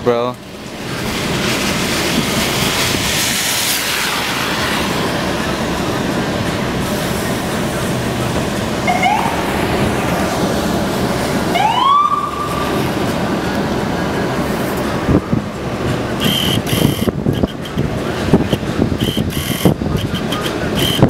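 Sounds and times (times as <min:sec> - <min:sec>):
steady rushing noise: 0:00.0 - 0:21.0
emergency vehicle siren whooping: 0:08.6 - 0:10.4, 0:11.4 - 0:14.3.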